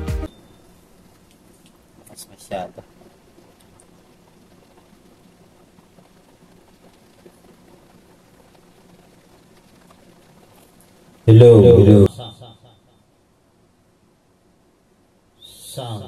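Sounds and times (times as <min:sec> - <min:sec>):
faint steady hiss: 0:00.0 - 0:16.0
low steady hum: 0:00.2 - 0:16.0
tiny ticks: 0:02.9 - 0:11.2.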